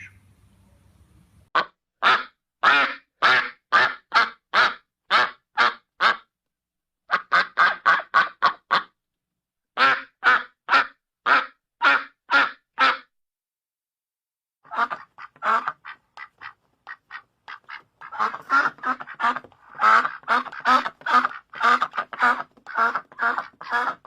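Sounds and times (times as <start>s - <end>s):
duck quacking: 0.0s - 0.2s, 1.6s - 6.3s, 7.1s - 9.0s, 9.8s - 13.1s, 14.7s - 24.0s.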